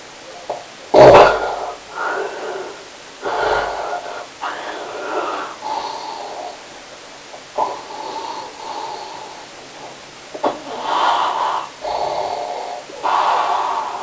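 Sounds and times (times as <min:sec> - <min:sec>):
person snoring: 0:01.0 - 0:06.6, 0:07.6 - 0:09.5, 0:10.4 - 0:14.0.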